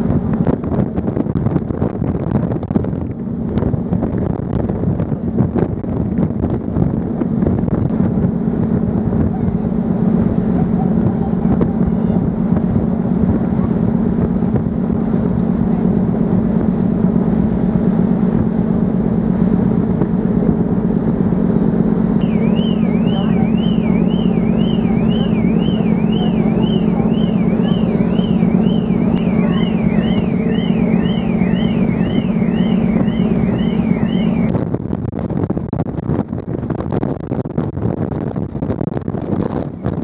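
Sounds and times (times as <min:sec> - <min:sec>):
ferry engine drone: 0:00.0 - 0:37.0
wind noise on microphone: 0:00.0 - 0:40.0
warbling electronic alarm: 0:22.2 - 0:34.5.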